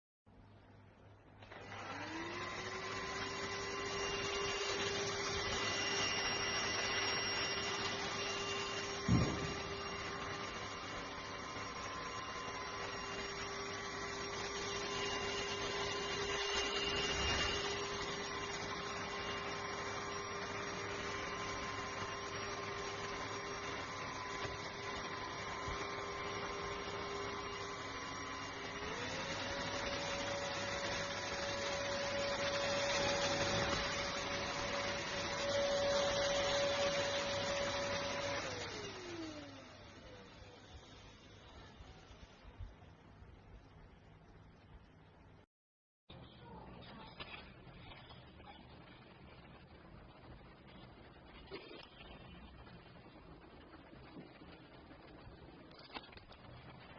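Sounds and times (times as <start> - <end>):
handheld vacuum cleaner running: 1.4 - 42.6
vacuum motor spinning down: 1.4 - 42.8, 49.4 - 56.9.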